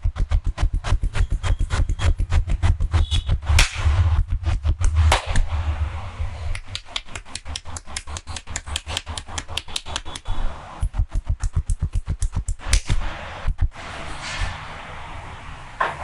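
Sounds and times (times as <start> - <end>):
hands slapping on body: 6.5 - 10.3, 11.4 - 13.1.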